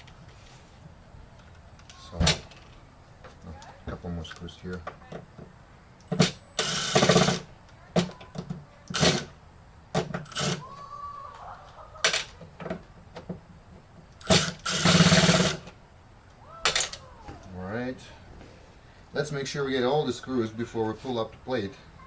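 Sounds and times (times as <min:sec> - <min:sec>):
power screwdriver whirring: 0:06.1 - 0:07.4, 0:14.2 - 0:15.6.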